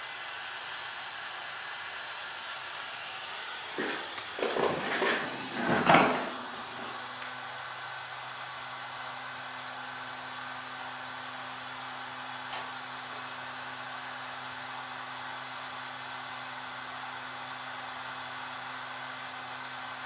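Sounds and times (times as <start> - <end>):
scraping and handling noises: 3.8 - 7.0
short click: 12.5 - 12.7.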